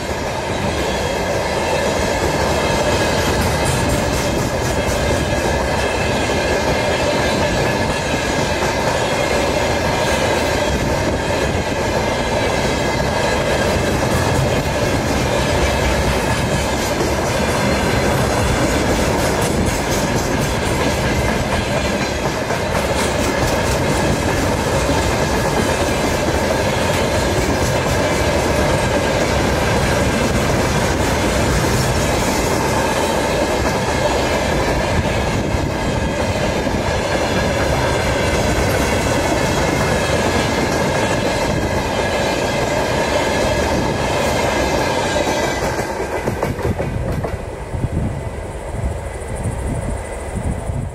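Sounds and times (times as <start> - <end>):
train rumbling on rails: 0.0 - 50.9.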